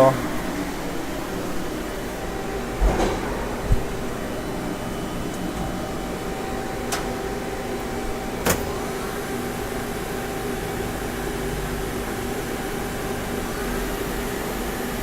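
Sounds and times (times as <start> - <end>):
lathe humming: 3.5 - 14.9.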